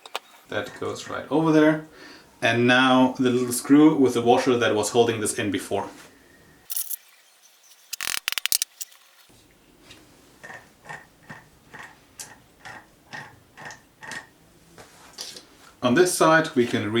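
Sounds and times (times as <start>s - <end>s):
short metallic clicks: 6.7s - 7.1s, 7.7s - 9.1s
screw clicking into place: 7.9s - 9.0s.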